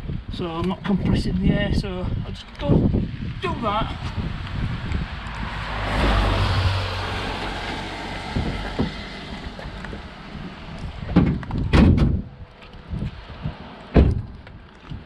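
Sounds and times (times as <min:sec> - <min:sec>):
clunks and knocks from car bodywork: 0:08.3 - 0:09.2, 0:09.9 - 0:12.7, 0:13.9 - 0:15.0.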